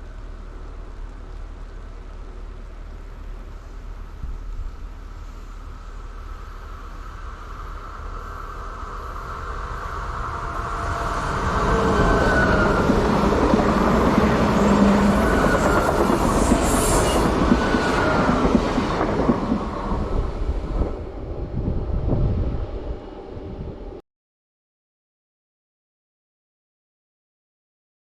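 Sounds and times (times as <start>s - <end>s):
train passing with wheel rumble: 0.0s - 24.0s
faint high wheel squeal: 7.5s - 13.2s, 14.6s - 18.5s.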